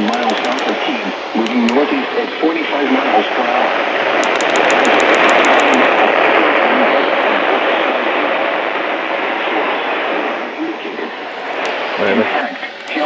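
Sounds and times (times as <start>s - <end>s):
quick high ticks: 0.0s - 0.8s, 1.4s - 1.8s, 4.2s - 6.0s.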